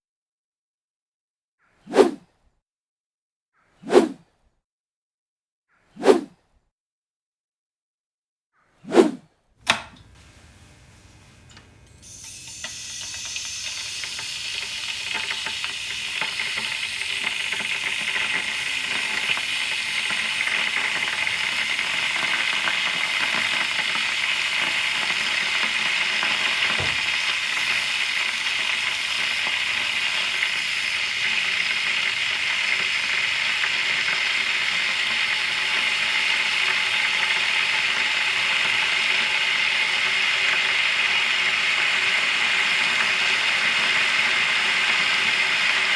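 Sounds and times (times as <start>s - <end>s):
electric kettle hissing: 9.6s - 45.9s.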